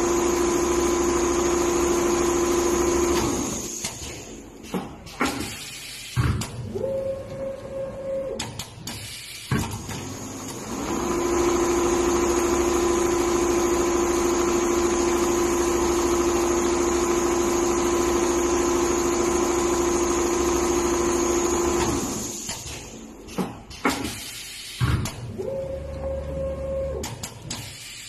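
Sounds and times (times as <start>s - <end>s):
sewing machine running: 0.0s - 3.8s, 10.0s - 22.4s.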